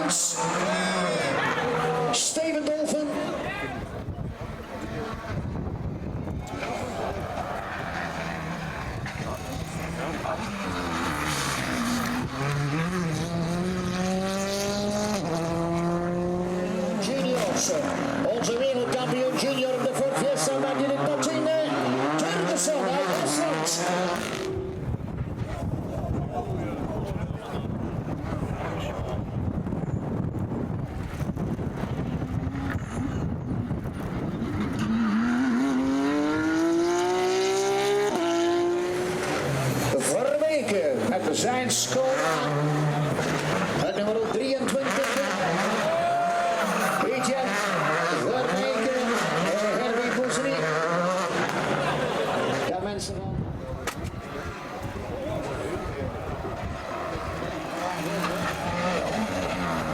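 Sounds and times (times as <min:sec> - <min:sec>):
rally car engine accelerating: 0:00.0 - 0:59.9.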